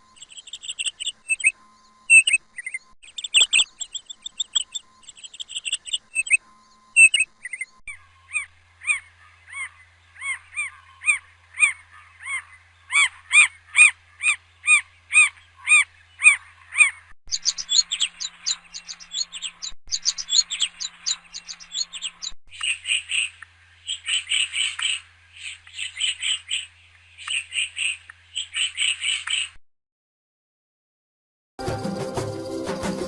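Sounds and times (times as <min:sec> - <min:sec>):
bird chirping: 0:00.0 - 0:29.6
bird whistling: 0:00.2 - 0:01.5, 0:02.1 - 0:06.4, 0:17.3 - 0:22.7.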